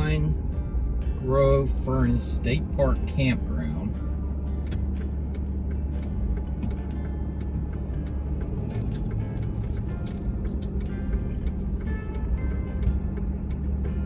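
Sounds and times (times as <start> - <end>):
truck engine and road rumble: 0.0 - 14.0
light ticks and rattles: 4.5 - 14.0.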